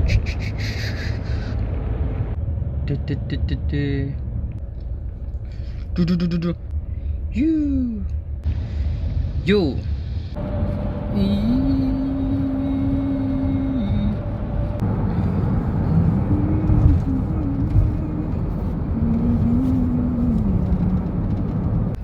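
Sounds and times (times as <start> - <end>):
car road noise: 0.0 - 22.0
man humming: 2.9 - 4.2, 5.9 - 6.6, 11.2 - 14.4.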